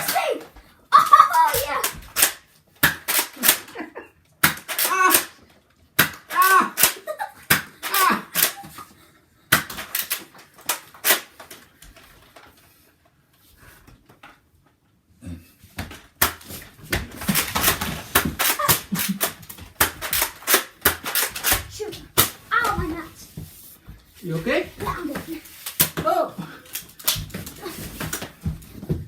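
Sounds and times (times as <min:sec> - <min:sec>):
toy blasters clicking and firing: 0:00.0 - 0:00.4, 0:01.0 - 0:03.8, 0:04.4 - 0:05.4, 0:06.0 - 0:08.8, 0:09.5 - 0:11.6, 0:17.1 - 0:22.8, 0:26.7 - 0:27.4
person yelping: 0:00.0 - 0:02.0, 0:04.7 - 0:05.4, 0:06.3 - 0:07.0, 0:07.8 - 0:08.7, 0:18.5 - 0:19.1
darts hitting surfaces: 0:01.0 - 0:03.8, 0:04.4 - 0:05.4, 0:06.0 - 0:08.8, 0:09.5 - 0:11.4, 0:15.8 - 0:23.6, 0:24.4 - 0:29.0.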